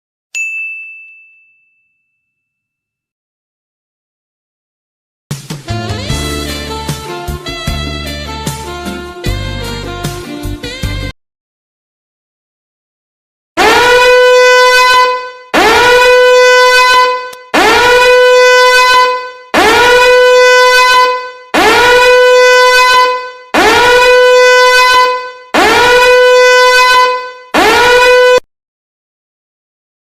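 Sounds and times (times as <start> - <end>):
loud buzzy horn blasts: 5.7 - 11.2, 13.6 - 28.5.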